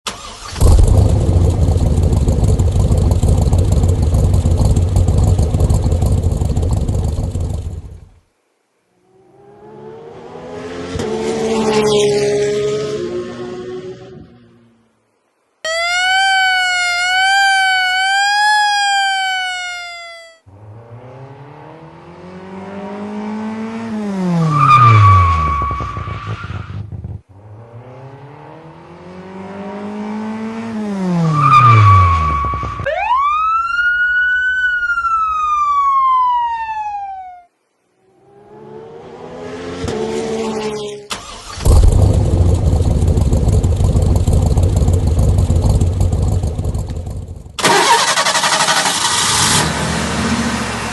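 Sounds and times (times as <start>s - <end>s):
loud engine running: 0.6s - 7.6s, 41.7s - 50.9s
car engine revving past: 9.1s - 14.8s, 20.5s - 25.9s, 27.0s - 32.7s, 38.2s - 42.2s
wavering siren-like tone: 15.6s - 20.5s, 31.4s - 37.5s
high rising and sliding tone: 15.7s - 22.6s.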